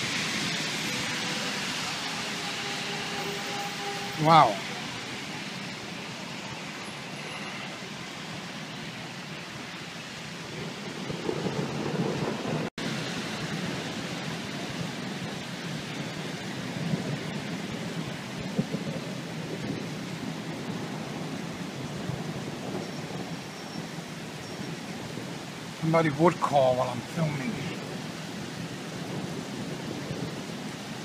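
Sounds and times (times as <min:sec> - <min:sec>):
heavy rain hissing: 0:00.0 - 0:31.0
rolling thunder: 0:10.4 - 0:23.8, 0:27.6 - 0:31.0.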